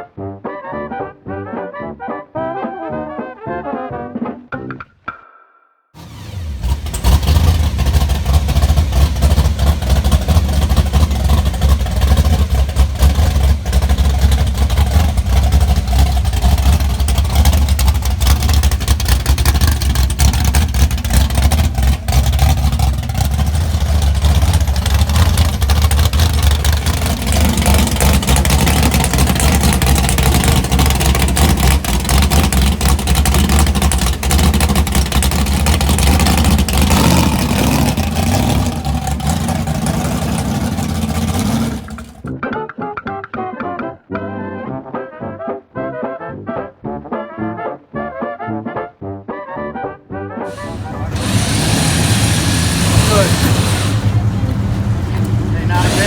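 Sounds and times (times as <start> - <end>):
car engine running: 6.0 - 42.3, 50.5 - 56.0.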